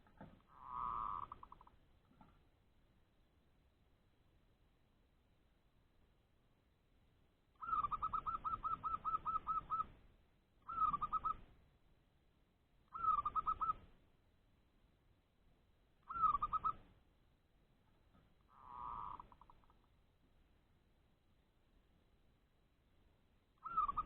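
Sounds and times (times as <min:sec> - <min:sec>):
dove rapid cooing call: 0:00.5 - 0:01.7, 0:07.6 - 0:10.0, 0:10.6 - 0:11.5, 0:12.9 - 0:13.9, 0:16.0 - 0:16.9, 0:18.5 - 0:19.8, 0:23.6 - 0:24.0.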